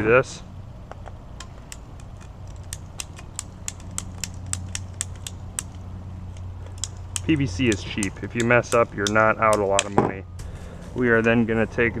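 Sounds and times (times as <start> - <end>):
steady low hum: 0.0 - 12.0
ratcheting pipe cutter clicking: 1.4 - 10.0.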